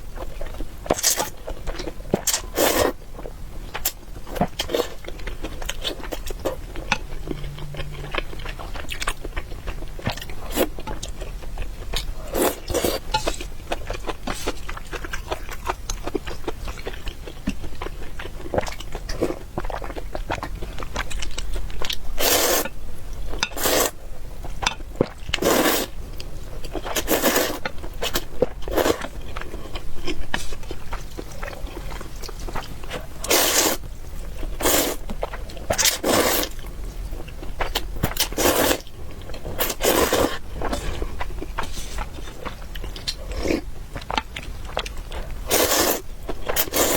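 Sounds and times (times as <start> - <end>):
chewing: 3.7 - 22.0, 25.0 - 46.9.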